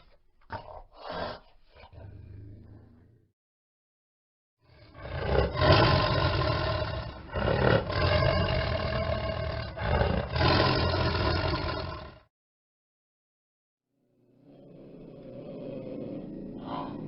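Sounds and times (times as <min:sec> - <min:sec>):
animal roaring: 0:04.7 - 0:12.2, 0:14.3 - 0:17.0.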